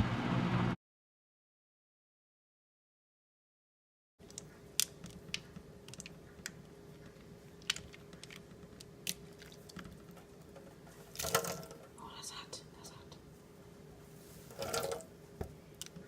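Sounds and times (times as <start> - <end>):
faint hum with low tone: 4.2 - 16.0.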